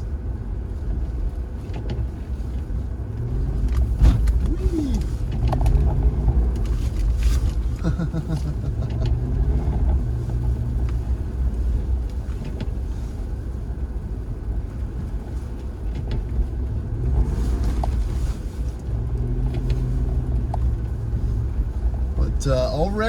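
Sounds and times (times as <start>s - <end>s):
car engine accelerating: 0.4s - 23.0s.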